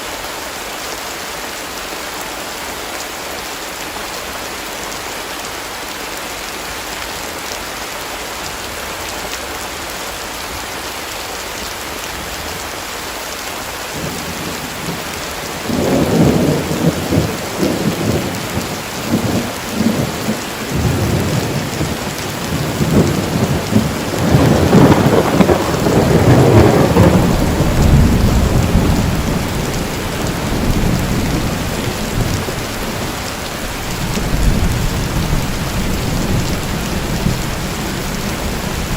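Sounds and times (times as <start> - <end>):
heavy rain: 0.0 - 38.9
rolling thunder: 15.6 - 38.9.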